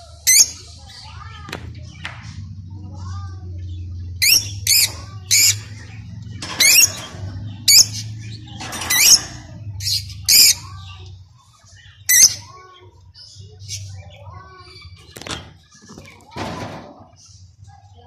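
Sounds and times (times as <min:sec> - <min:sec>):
lovebirds squawking: 0:03.8 - 0:16.2.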